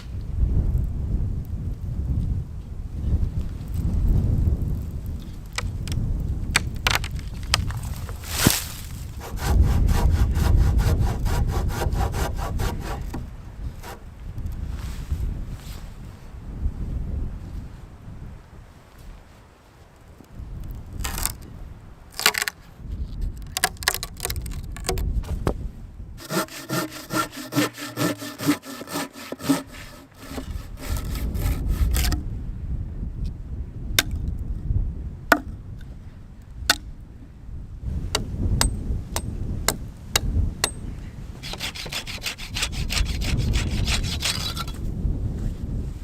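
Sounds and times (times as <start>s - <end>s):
wind rumble on microphone: 0.0s - 46.0s
wood cracking: 5.4s - 14.1s, 21.0s - 21.4s, 22.1s - 22.6s, 23.4s - 25.5s, 26.2s - 32.2s
hand saw cutting wood: 8.3s - 14.0s, 26.2s - 32.2s, 41.4s - 44.8s.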